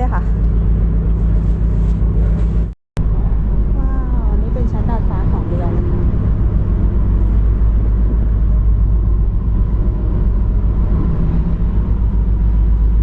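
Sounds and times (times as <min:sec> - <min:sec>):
ship low rumble and hum: 0:00.0 - 0:13.0.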